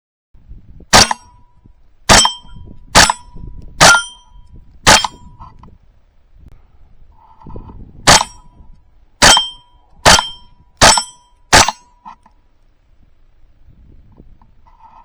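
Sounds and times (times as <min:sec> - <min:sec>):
rifle gunshots: 0:00.9 - 0:01.3, 0:02.1 - 0:03.2, 0:04.9 - 0:05.2, 0:08.1 - 0:08.4, 0:09.2 - 0:11.8
steel target ringing: 0:00.9 - 0:01.5, 0:02.1 - 0:05.4, 0:08.1 - 0:08.6, 0:09.2 - 0:12.0.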